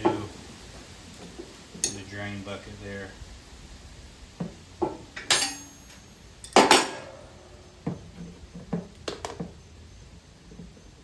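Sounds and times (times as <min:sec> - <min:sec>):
metal tools clinking and knocking: 0:01.8 - 0:02.1, 0:05.2 - 0:07.1
ringing metal clank: 0:05.2 - 0:07.3.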